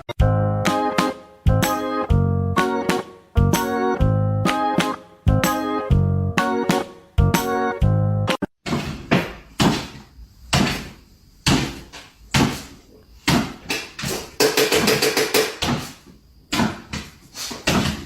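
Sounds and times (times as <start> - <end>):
sharp knocks or bangs: 8.6 - 18.0.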